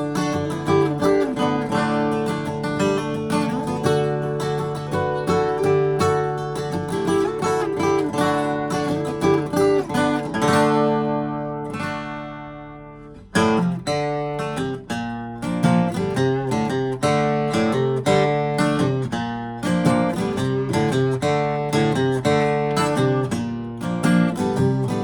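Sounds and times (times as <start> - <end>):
acoustic guitar strummed: 0.0 - 25.0.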